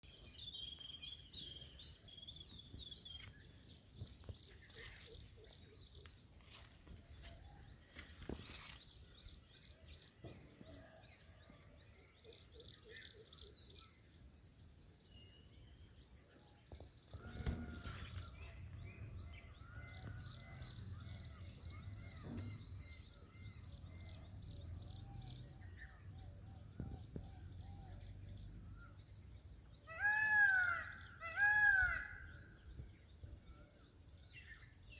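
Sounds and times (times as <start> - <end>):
small birds chirping: 0.0 - 34.9
thump: 22.0 - 22.8.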